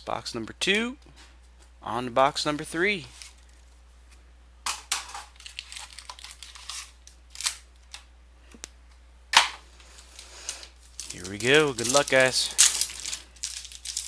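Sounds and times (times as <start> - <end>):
plastic wrap crinkling and tearing: 5.0 - 8.0, 9.7 - 14.0.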